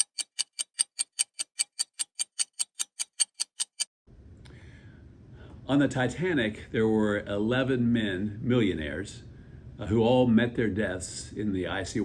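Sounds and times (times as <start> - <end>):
clock-like ticking: 0.0 - 3.9
faint low room hum: 4.1 - 12.0.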